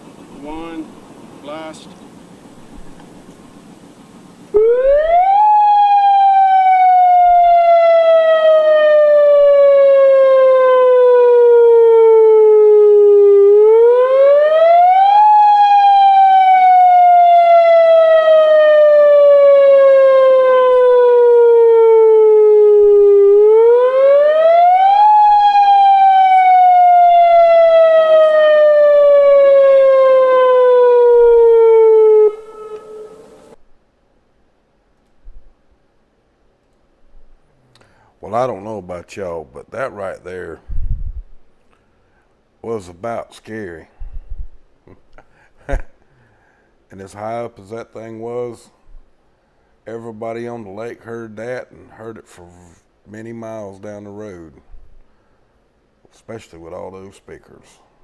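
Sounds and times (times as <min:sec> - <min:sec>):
wailing warning siren: 0:04.6 - 0:33.6.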